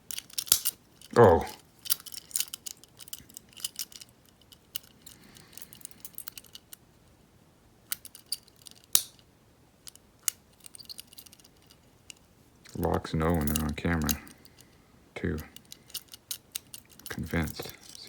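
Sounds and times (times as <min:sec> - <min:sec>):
lock pick clicks and scrapes: 0:00.1 - 0:01.1, 0:01.8 - 0:06.8, 0:09.9 - 0:12.2, 0:15.6 - 0:18.0.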